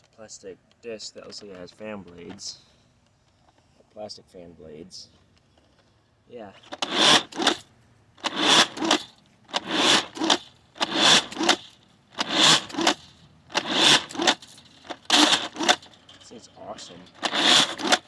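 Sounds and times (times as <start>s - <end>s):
toy blaster pumping and firing: 6.6s - 15.9s, 16.8s - 18.0s.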